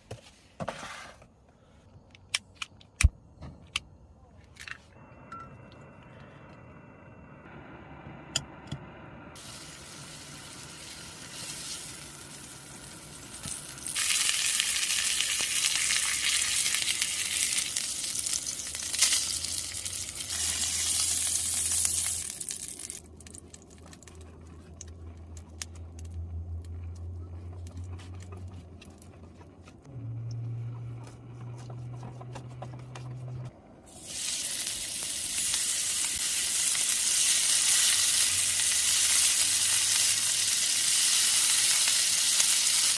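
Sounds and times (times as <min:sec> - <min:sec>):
low steady hum: 0:03.0 - 0:35.9
food sizzling in a pan: 0:09.4 - 0:22.5, 0:33.9 - 0:42.9.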